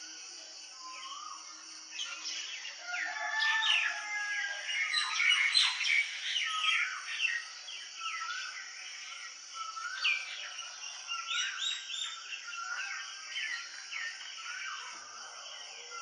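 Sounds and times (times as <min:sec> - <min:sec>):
birds chirping and singing: 0:00.4 - 0:16.0.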